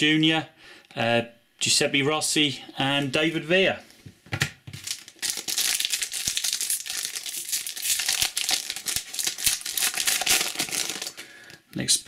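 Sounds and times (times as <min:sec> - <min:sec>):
wrapper tearing and crinkling: 0:04.8 - 0:11.2.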